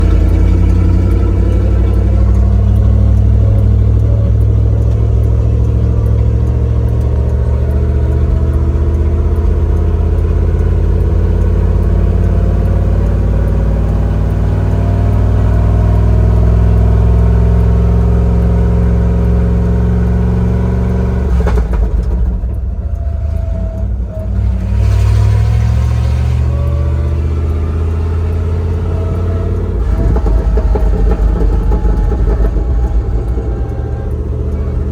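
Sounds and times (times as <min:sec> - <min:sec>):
truck engine running: 0:00.0 - 0:34.9
rough rattly gear shift: 0:28.9 - 0:34.9.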